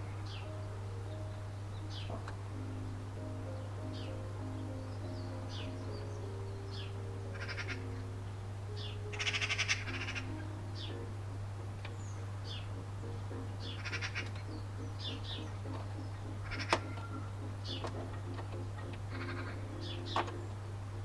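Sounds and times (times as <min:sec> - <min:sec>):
held low notes: 0:00.0 - 0:21.0
small birds chirping: 0:00.0 - 0:21.0
steady low hum: 0:00.0 - 0:21.0
rapid bird trills: 0:03.9 - 0:08.0, 0:08.8 - 0:11.1, 0:11.9 - 0:20.7.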